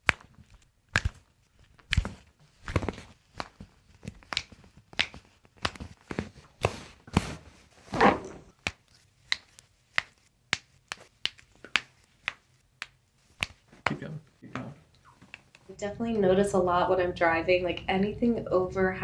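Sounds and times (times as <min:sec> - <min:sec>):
footsteps on hard floor: 0:05.8 - 0:08.5.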